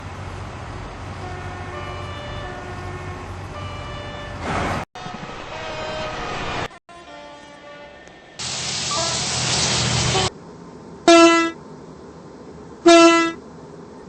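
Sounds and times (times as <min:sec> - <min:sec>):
train horn blasts: 0:01.2 - 0:10.3, 0:11.1 - 0:11.6, 0:12.8 - 0:13.4
loud rushing noise: 0:04.4 - 0:06.8.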